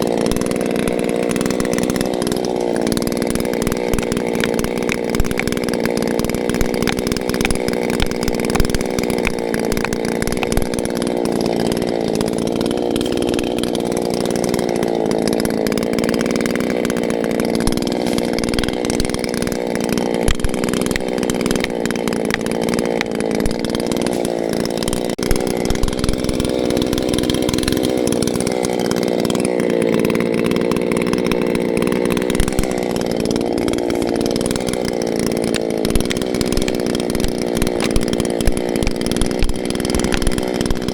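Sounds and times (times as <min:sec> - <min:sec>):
chainsaw cutting wood: 0:00.0 - 0:40.9
sharp clicks: 0:32.2 - 0:40.9.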